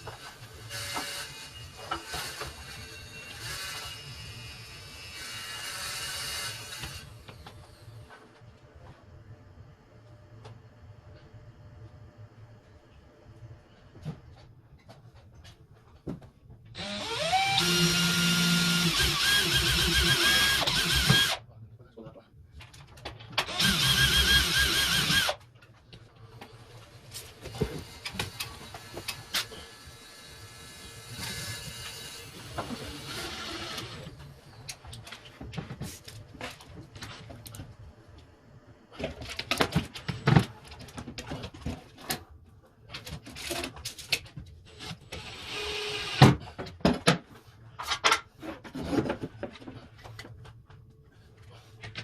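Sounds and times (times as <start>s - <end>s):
power drill whining: 16.8s - 21.4s, 23.4s - 25.4s, 27.4s - 34.2s, 44.8s - 46.4s.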